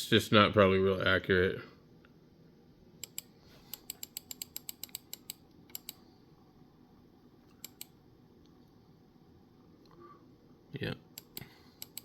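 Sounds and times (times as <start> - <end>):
mouse scroll-wheel clicks: 3.0 - 6.0, 7.5 - 8.0, 11.2 - 12.0.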